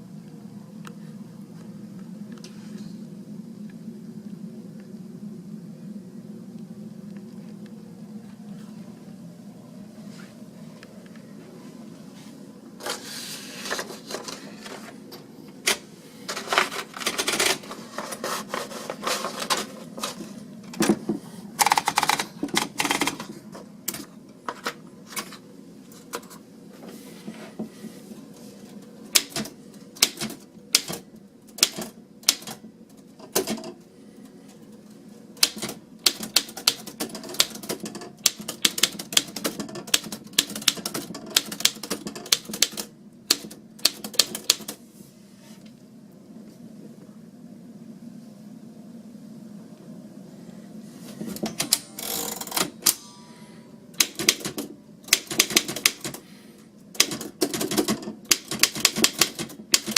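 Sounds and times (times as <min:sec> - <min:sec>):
manual typewriter key strikes: 0:29.1 - 0:32.6, 0:35.4 - 0:44.8, 0:54.0 - 0:56.2, 0:57.0 - 0:59.9.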